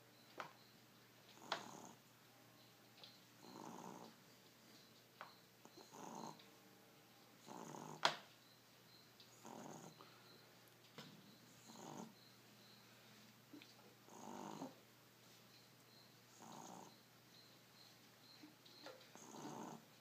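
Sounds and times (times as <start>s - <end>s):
pet snoring quietly: 1.3s - 2.7s, 3.4s - 4.2s, 4.8s - 6.5s, 7.4s - 10.5s, 11.2s - 14.8s, 15.6s - 20.0s.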